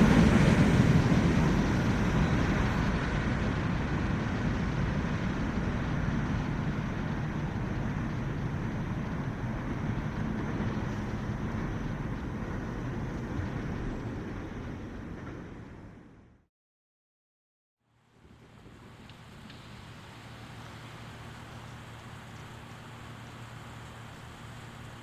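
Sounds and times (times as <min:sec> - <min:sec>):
train rumbling along rails: 0:00.0 - 0:16.4.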